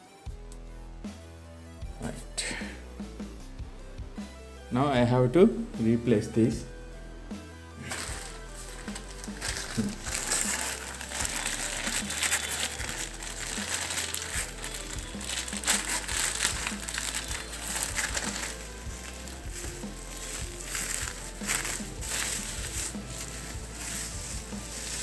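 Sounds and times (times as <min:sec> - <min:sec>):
music with steady beat and bass: 0:00.0 - 0:25.0
crinkly handling noise: 0:07.7 - 0:25.0.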